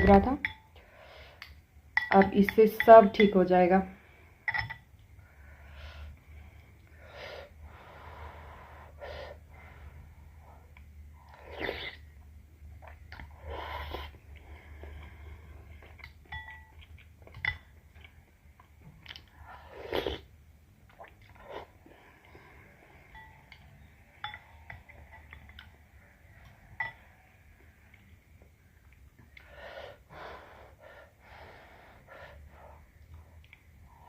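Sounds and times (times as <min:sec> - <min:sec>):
utensil clinking against a bowl: 0:01.4 - 0:03.4, 0:16.0 - 0:17.8, 0:23.0 - 0:25.8, 0:26.4 - 0:27.4
person slurping: 0:11.3 - 0:12.1, 0:19.5 - 0:20.3.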